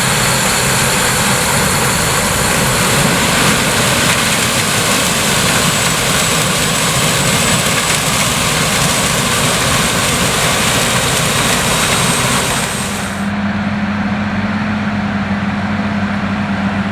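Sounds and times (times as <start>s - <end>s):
strong hiss: 0.0s - 13.3s
steady low hum: 0.0s - 13.5s
combine harvester running: 0.0s - 15.9s.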